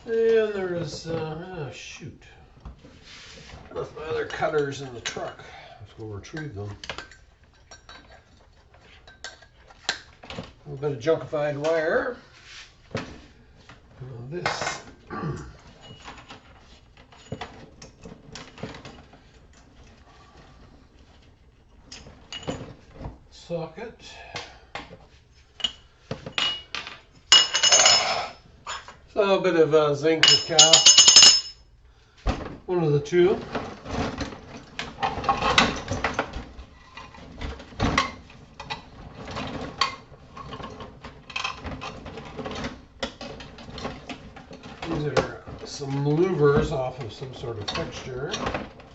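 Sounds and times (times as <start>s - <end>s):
metal scrap parts clicking: 27.4s - 28.4s, 30.2s - 31.5s.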